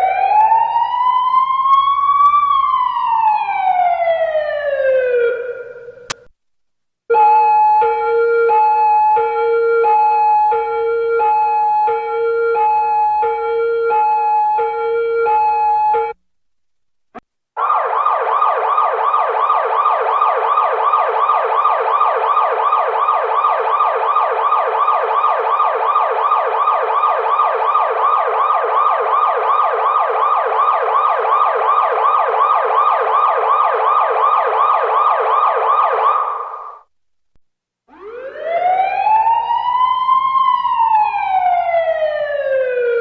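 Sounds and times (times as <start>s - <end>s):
police siren yelping: 0.0s - 6.2s, 7.1s - 16.2s, 17.6s - 36.8s, 37.9s - 43.0s
click: 6.1s - 6.3s.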